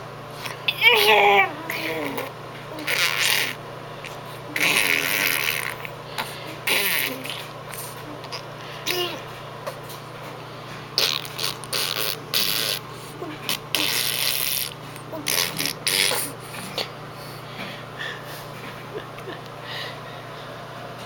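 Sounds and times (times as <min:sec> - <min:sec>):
lips blowing raspberries: 0:01.7 - 0:09.8, 0:11.0 - 0:17.4.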